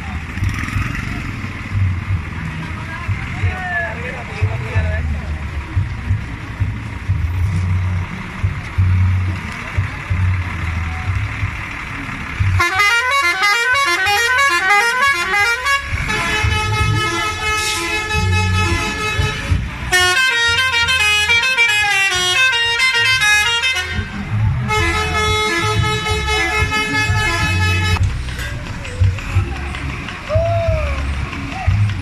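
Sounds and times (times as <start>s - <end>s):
bus engine running: 0.0s - 32.0s
musical horn playing notes: 12.6s - 28.0s.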